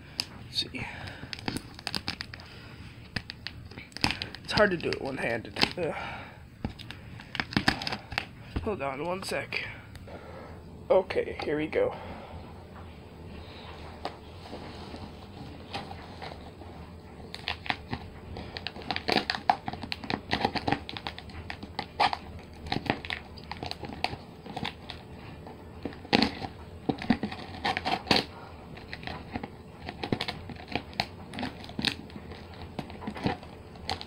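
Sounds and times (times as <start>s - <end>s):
packaging crinkling and tearing: 1.0s - 9.2s, 17.2s - 34.0s.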